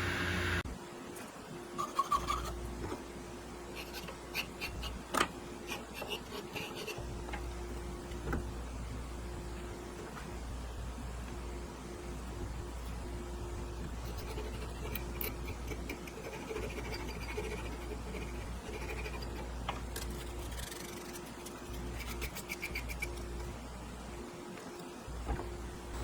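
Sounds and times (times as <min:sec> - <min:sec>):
mid-pitched machine tone: 0:00.0 - 0:00.7
workshop machine humming: 0:00.0 - 0:26.0.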